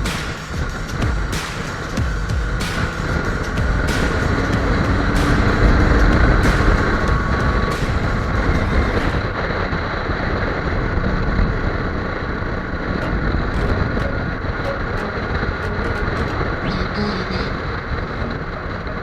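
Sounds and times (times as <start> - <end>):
motorcycle engine running: 0.9 - 9.0
wind rush on microphone: 2.8 - 16.7.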